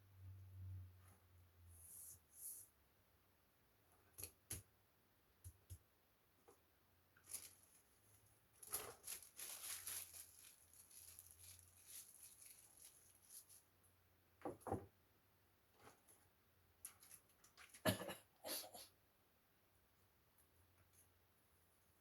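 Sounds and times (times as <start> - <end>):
scraping and rustling: 7.2 - 13.7.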